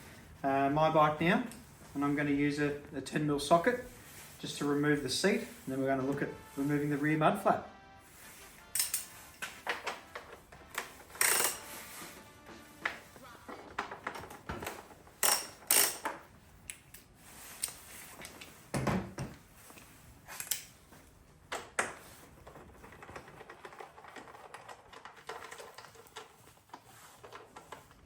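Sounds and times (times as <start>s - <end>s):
ratchet clicking and knocking on metal: 10.8s - 11.6s, 14.1s - 16.2s.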